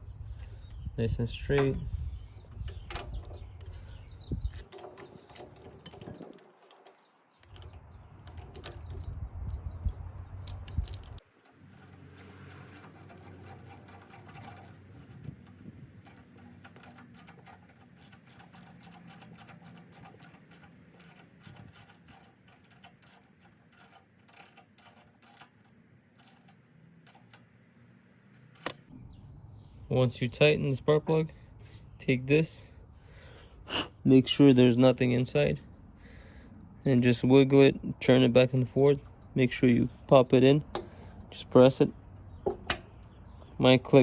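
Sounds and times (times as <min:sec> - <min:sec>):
microphone handling rumble: 0:00.0 - 0:04.7
ratchet metallic clicks: 0:01.5 - 0:27.5.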